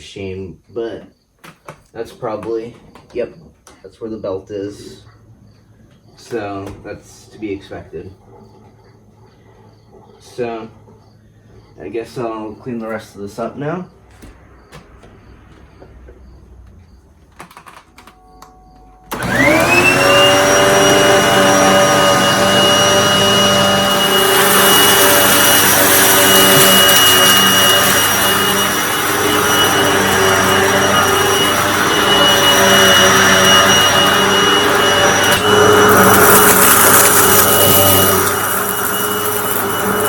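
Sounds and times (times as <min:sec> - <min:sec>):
vacuum cleaner motor whine: 0:17.9 - 0:40.0.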